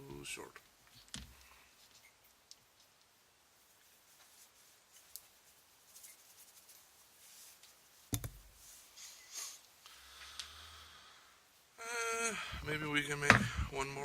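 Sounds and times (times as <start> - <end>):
wires and tools rustling: 0.6 - 10.5.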